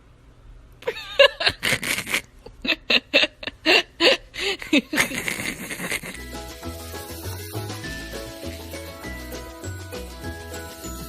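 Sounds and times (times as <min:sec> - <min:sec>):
background music with bass line: 0:06.2 - 0:11.0.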